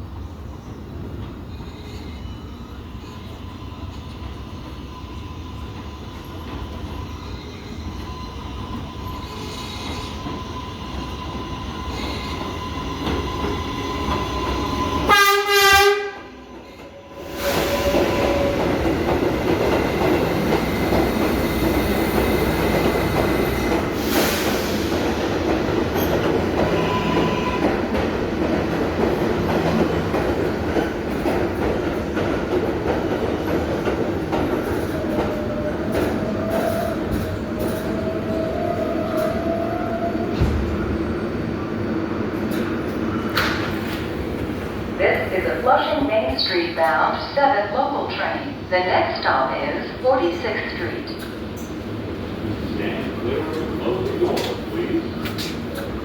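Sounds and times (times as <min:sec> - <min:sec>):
subway train passing: 0:00.0 - 0:56.0
train horn blast: 0:15.1 - 0:16.4, 0:26.7 - 0:27.8.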